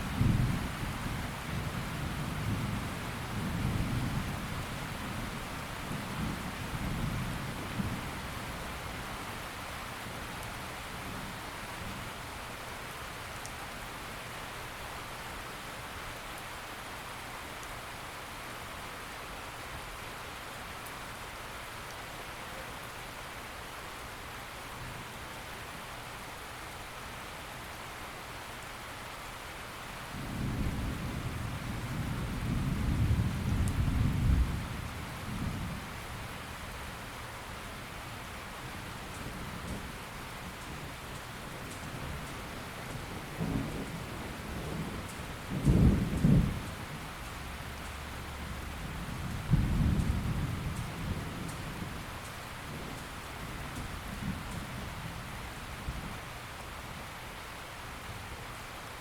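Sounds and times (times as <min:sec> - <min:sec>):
steady rain hissing: 0:00.0 - 0:59.0
thunder rumbling: 0:39.1 - 0:55.2.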